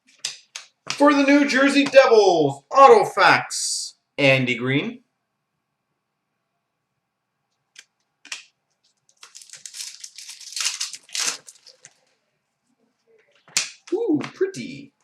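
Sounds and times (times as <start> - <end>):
foil wrapper crinkling and tearing: 8.3 - 12.0.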